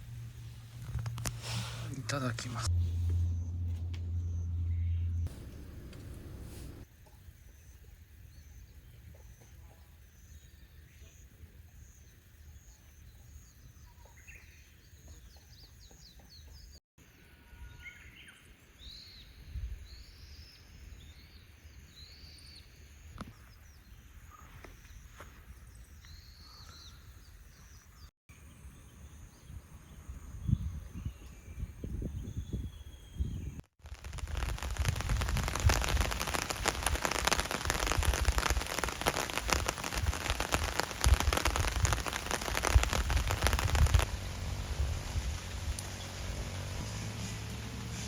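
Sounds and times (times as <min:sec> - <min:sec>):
low background rumble: 0:00.0 - 0:06.8.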